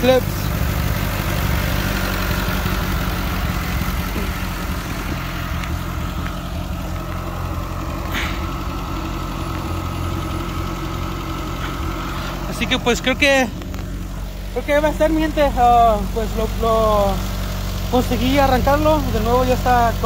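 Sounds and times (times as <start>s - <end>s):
car engine idling: 0.0s - 20.0s.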